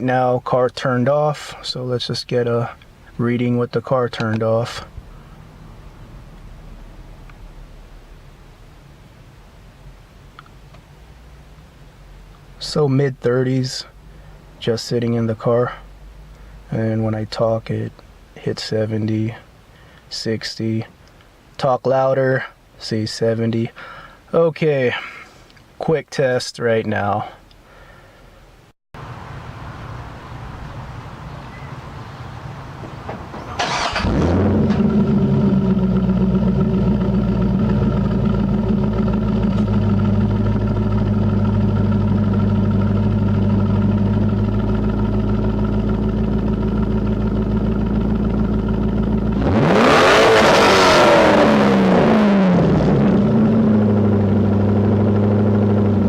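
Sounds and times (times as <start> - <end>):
car engine starting: 0.7 - 20.1, 29.0 - 56.0
car engine idling: 1.3 - 20.0, 29.0 - 56.0
car engine revving: 33.4 - 56.0.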